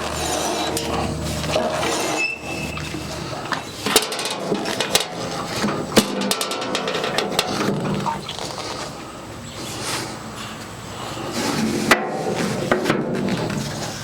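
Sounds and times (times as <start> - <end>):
rattle of small ticks: 2.8 - 8.9.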